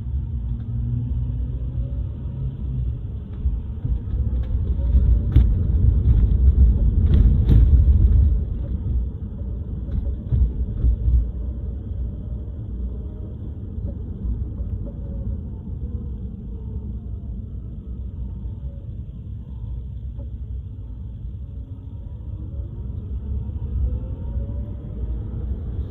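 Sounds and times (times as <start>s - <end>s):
road and tyre rumble: 0.0s - 25.9s
car knocking thumps: 3.4s - 9.0s.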